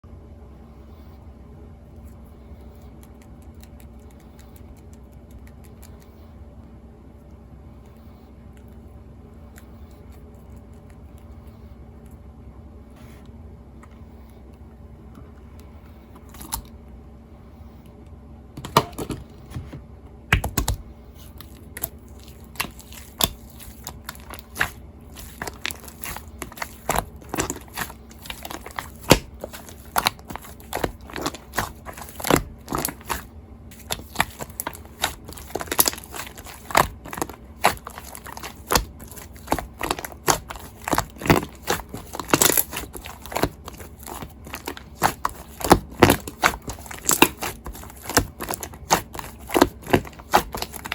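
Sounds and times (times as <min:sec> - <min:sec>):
slime crackling and popping: 0:21.5 - 0:50.9.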